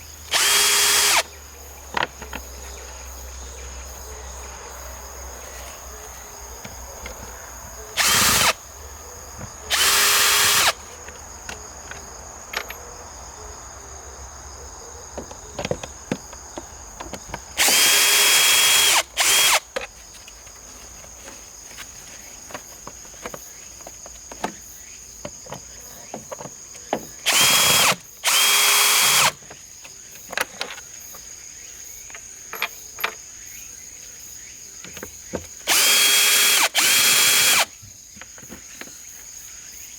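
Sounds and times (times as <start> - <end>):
cicadas buzzing: 0.0 - 39.9
power drill running: 0.3 - 1.3, 7.9 - 8.6, 9.7 - 10.8, 17.6 - 19.6, 27.2 - 29.4, 35.7 - 37.7.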